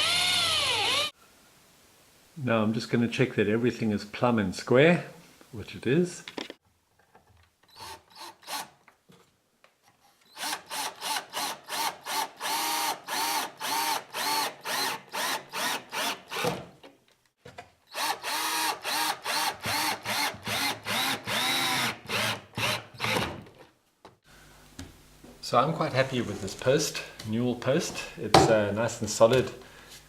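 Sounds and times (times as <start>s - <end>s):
power drill whining in pulses: 0.0s - 1.1s, 10.3s - 16.5s, 17.9s - 23.4s.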